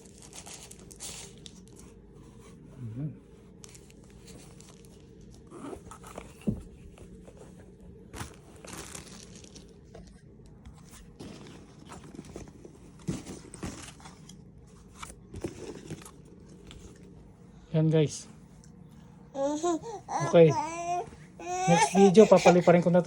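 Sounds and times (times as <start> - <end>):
packaging rustling and crinkling: 0.0 - 2.0, 3.5 - 17.1.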